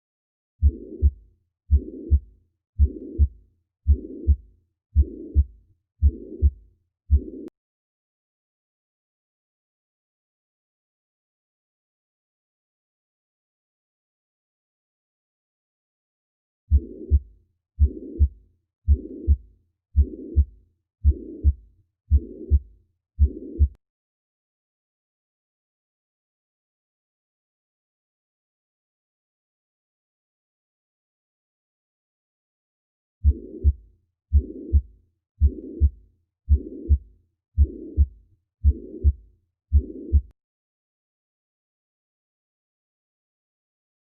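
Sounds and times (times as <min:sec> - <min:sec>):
heartbeat thuds: 0:00.6 - 0:04.4, 0:05.0 - 0:07.5, 0:16.7 - 0:19.4, 0:20.0 - 0:23.8, 0:33.2 - 0:40.3
rushing heart murmur: 0:35.4 - 0:37.0.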